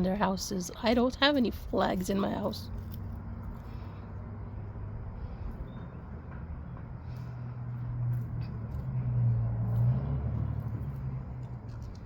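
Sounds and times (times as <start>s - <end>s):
car engine hum passing by: 2.6s - 12.0s.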